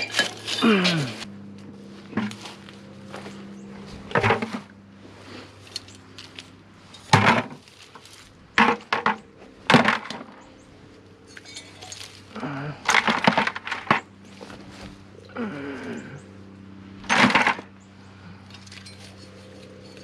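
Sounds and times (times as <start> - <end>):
scrap metal clanking: 0.0 - 1.3.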